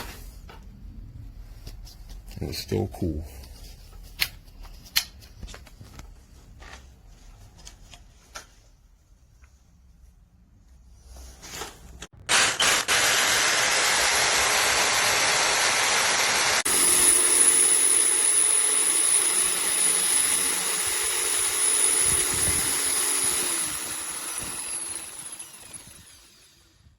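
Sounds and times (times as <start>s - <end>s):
hammer drill running: 12.3s - 26.9s.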